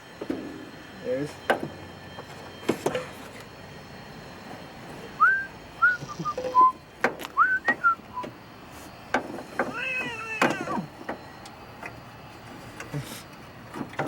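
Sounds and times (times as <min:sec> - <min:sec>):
person whistling: 0:05.2 - 0:06.8, 0:07.4 - 0:08.3.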